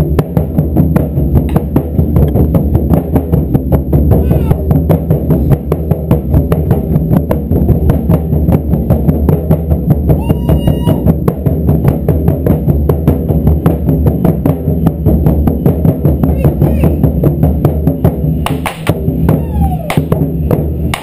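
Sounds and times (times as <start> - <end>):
taiko drums pounding fast beat: 0.0 - 21.0.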